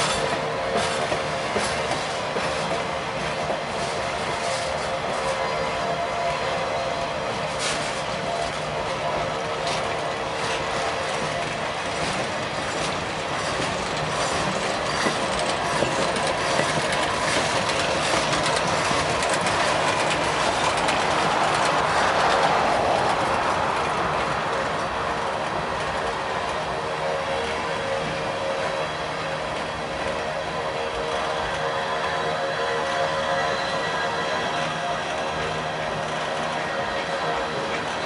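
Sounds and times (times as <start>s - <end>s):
freight train cars rumbling: 0.0s - 38.0s
wheels clicking over rail joints: 7.5s - 26.6s
wheel squeal: 11.9s - 21.0s.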